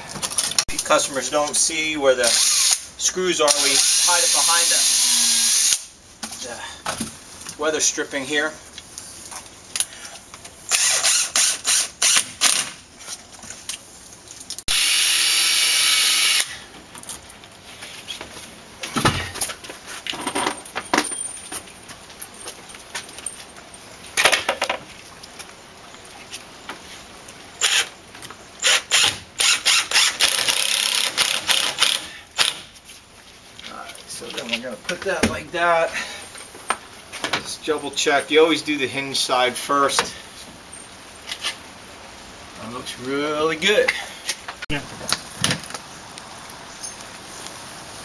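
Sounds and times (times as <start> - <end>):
cordless screw gun driving screws: 2.2 - 2.9, 3.5 - 5.9, 10.7 - 12.8, 14.7 - 16.5, 27.6 - 27.9, 28.6 - 32.6.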